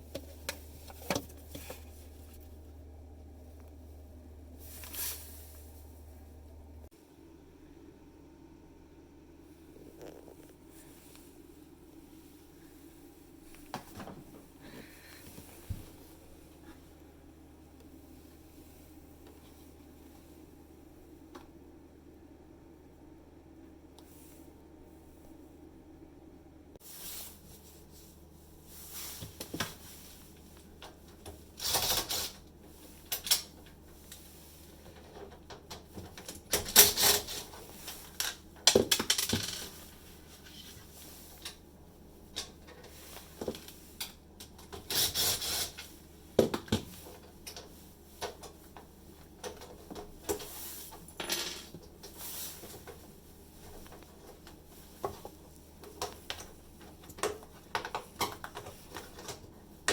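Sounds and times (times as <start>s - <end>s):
rattling and scraping: 0.0s - 2.6s
small parts and tools clinking: 51.1s - 51.8s.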